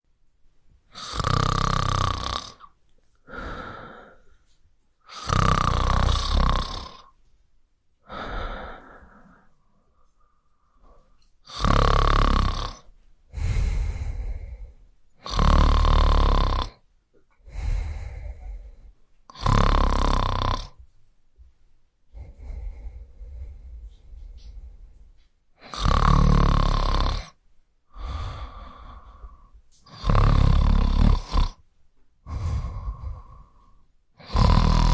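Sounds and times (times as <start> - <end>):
man snoring: 0.9 - 2.7, 5.1 - 7.1, 11.5 - 16.8, 17.5 - 20.8, 22.1 - 24.6, 25.6 - 31.6, 32.3 - 34.9
soft breathing: 3.0 - 5.3, 8.0 - 11.4, 13.3 - 15.5, 17.4 - 19.6, 22.1 - 31.6, 32.2 - 34.7.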